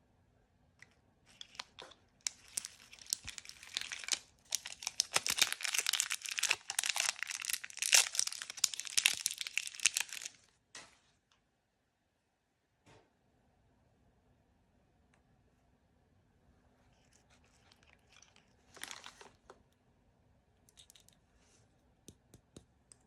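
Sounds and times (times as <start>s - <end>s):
packaging crinkling and tearing: 1.3s - 10.4s, 17.6s - 19.5s.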